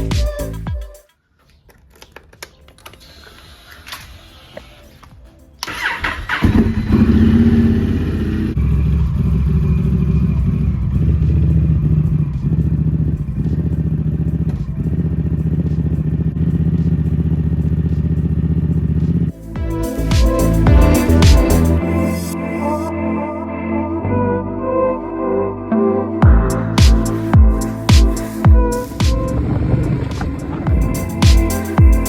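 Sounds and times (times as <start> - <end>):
motorcycle engine starting: 5.6 - 22.9, 26.2 - 32.0
motorcycle engine idling: 5.7 - 21.8, 26.2 - 32.0.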